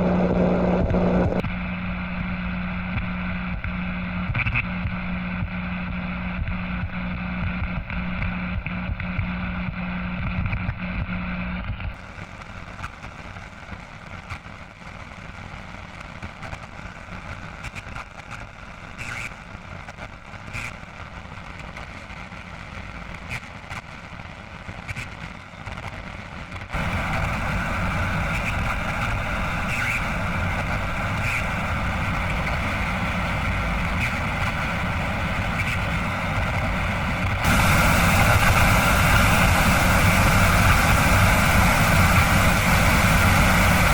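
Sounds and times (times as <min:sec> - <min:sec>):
faint crackles: 0:00.0 - 0:01.4
fixed hum: 0:00.0 - 0:01.4, 0:26.8 - 0:43.9
radio static hiss: 0:00.0 - 0:08.5, 0:09.4 - 0:43.9.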